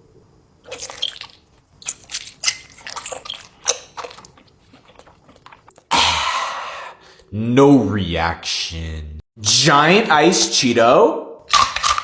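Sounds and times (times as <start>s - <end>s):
crunchy chewing of food: 0.6s - 5.9s.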